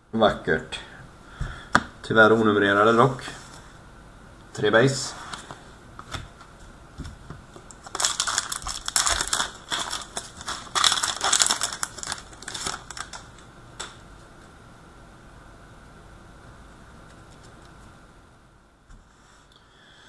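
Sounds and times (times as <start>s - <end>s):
foil wrapper crinkling and tearing: 7.6s - 13.5s.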